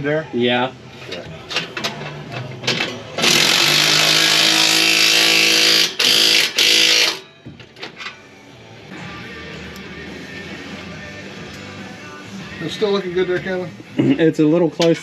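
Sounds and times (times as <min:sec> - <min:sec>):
power tool whirring: 0:03.2 - 0:07.2.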